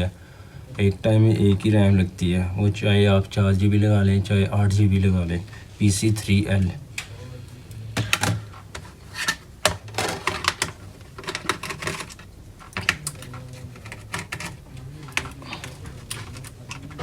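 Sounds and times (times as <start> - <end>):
steady low hum: 0.0 - 17.0
plastic and metal parts clicking: 8.0 - 17.0.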